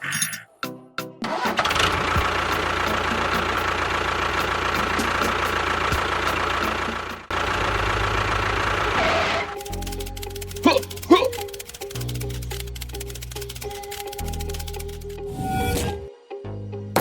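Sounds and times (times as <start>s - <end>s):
motor running: 1.6s - 15.6s.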